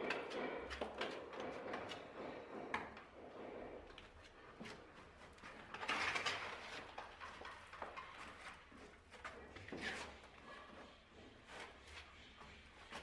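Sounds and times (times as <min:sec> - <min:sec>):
hand tools scraping and knocking: 0:00.0 - 0:13.0.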